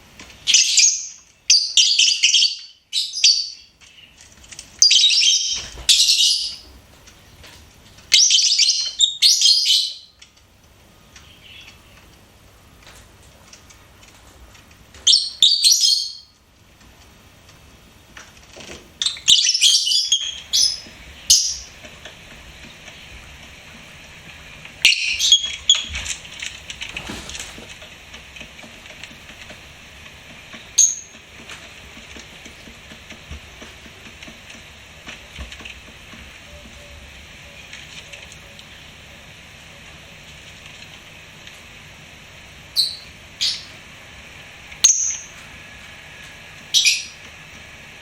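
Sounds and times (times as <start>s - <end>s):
lovebirds chirping: 0.4s - 7.4s, 8.1s - 10.2s, 11.1s - 12.1s, 15.0s - 16.4s, 19.0s - 21.8s, 24.8s - 26.2s, 30.7s - 31.2s, 42.7s - 43.8s, 44.8s - 45.4s, 46.7s - 47.2s.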